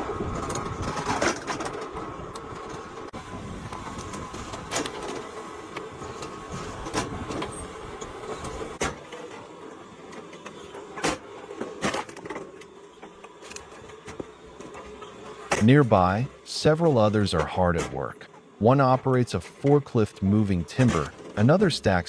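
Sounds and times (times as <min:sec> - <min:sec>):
log splitter humming: 0:00.0 - 0:09.0.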